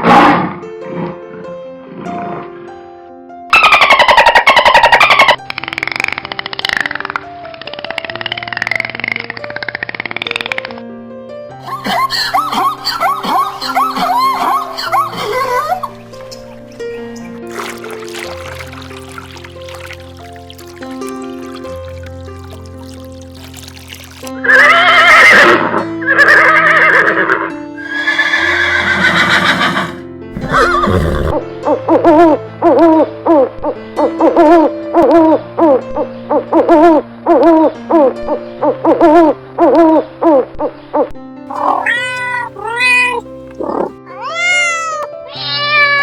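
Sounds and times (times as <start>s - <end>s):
background music: 0.0s - 40.5s, 41.4s - 46.0s
animal calls: 3.5s - 5.4s, 27.8s - 31.4s, 41.5s - 44.8s.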